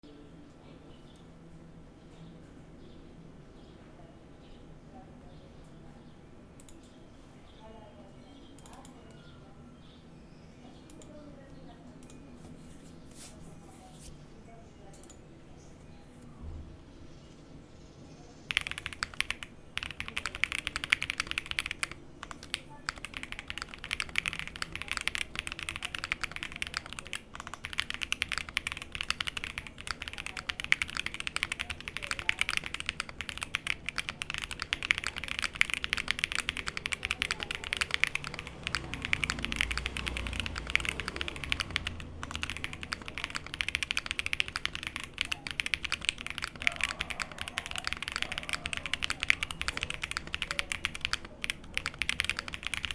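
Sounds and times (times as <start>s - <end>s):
mechanical keyboard typing: 18.5s - 52.9s.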